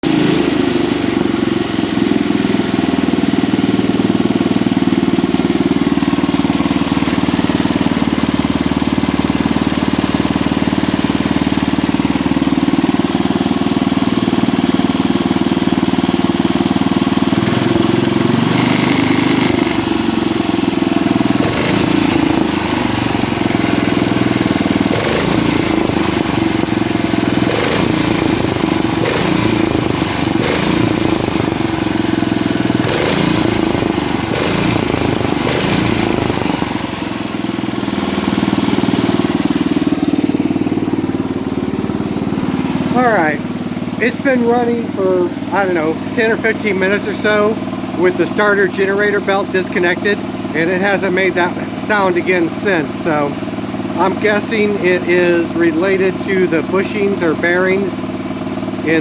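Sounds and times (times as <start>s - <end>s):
garden tractor engine running: 0.0s - 59.0s.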